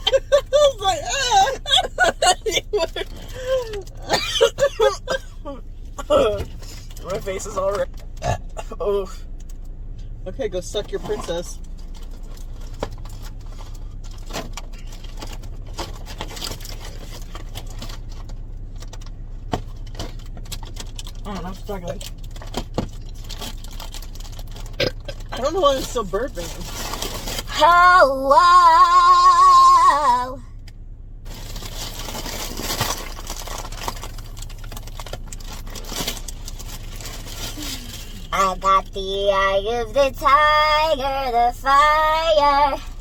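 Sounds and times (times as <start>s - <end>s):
car engine hum: 0.0s - 43.0s
balloon crinkling and rustling: 11.0s - 27.5s, 31.3s - 38.4s.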